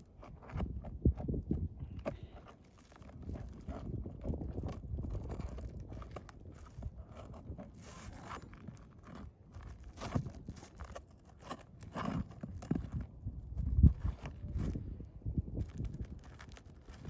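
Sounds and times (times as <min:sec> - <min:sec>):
pry tool scraping shingles: 0:00.0 - 0:13.2.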